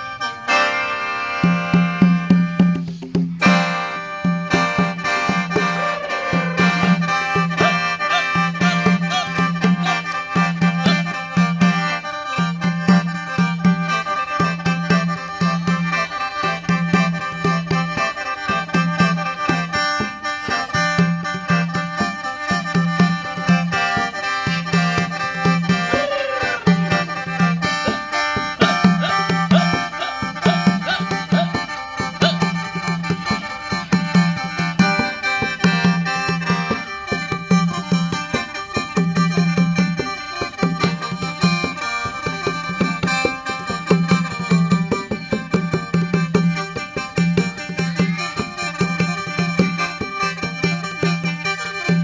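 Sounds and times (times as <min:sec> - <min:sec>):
rhythmic beat: 0:01.4 - 0:52.0
mouth organ playing chords: 0:05.1 - 0:11.2.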